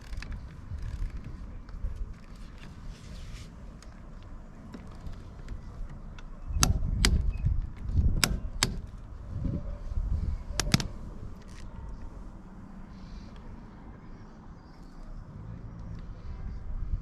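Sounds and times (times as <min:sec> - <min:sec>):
low handling rumble: 0:00.0 - 0:17.0
sharp tool clicks and knocks: 0:05.9 - 0:09.0, 0:10.6 - 0:10.9.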